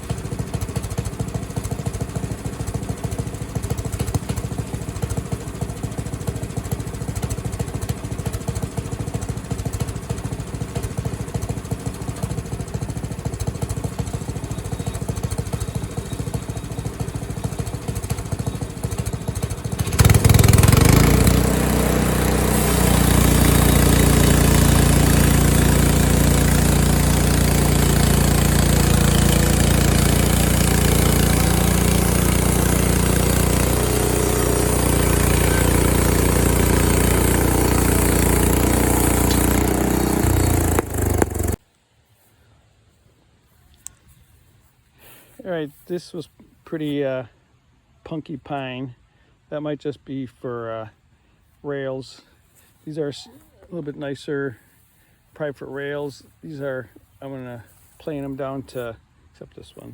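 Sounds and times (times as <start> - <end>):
small gas engine running: 0.0 - 41.6.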